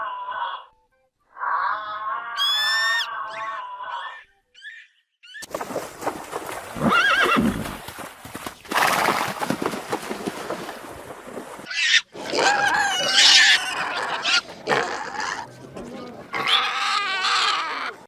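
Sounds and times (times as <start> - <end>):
horse whinnying: 6.8 - 7.7, 11.7 - 15.5, 16.3 - 18.0.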